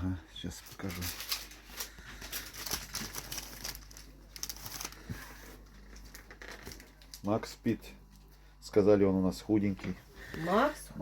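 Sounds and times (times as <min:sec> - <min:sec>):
wrapping paper rustling: 0:00.4 - 0:08.4.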